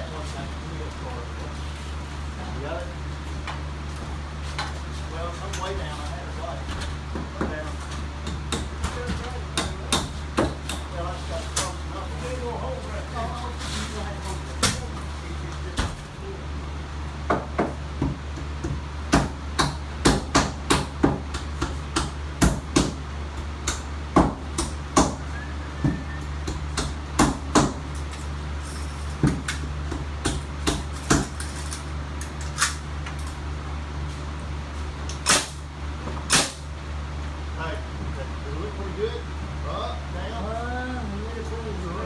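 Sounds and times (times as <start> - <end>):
steady low hum: 0.0 - 42.0
hammer blows on wood: 23.7 - 27.8.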